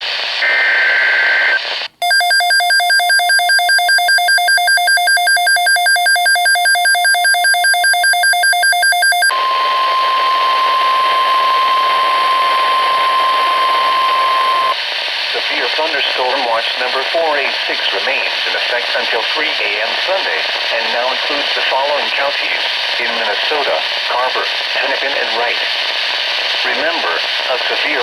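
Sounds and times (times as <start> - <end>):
radio static hiss: 0.0 - 2.0, 9.4 - 28.0
rapid electronic alarm beeping: 2.0 - 9.4
steady warning alarm tone: 2.0 - 14.7.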